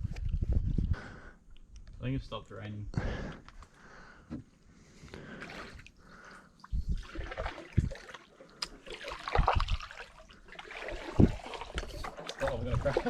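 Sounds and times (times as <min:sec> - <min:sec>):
paddles splashing through water: 0:05.4 - 0:13.0.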